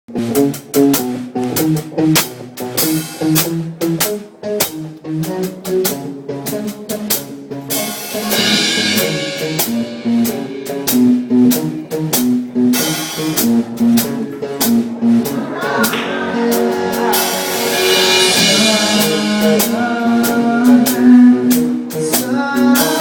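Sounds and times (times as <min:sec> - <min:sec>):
bass and guitar notes: 0:00.1 - 0:23.0
drum kit steady beat: 0:00.1 - 0:23.0
cymbal wash: 0:07.9 - 0:11.7.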